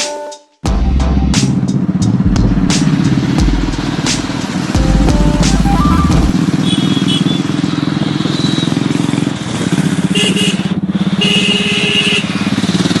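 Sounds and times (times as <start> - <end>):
motorcycle engine running: 0.7 - 11.5
brief high tones: 4.8 - 6.8.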